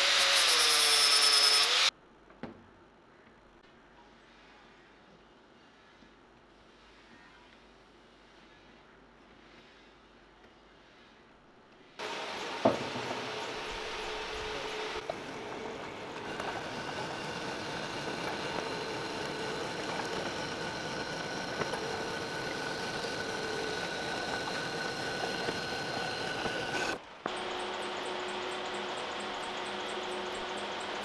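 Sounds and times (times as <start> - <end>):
power tool whining: 0.0 - 1.9, 12.0 - 31.0.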